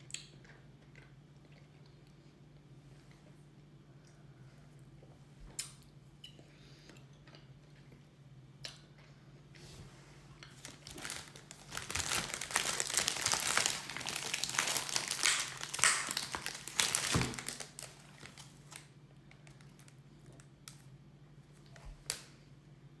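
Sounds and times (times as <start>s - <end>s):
packaging crinkling: 10.5s - 18.9s.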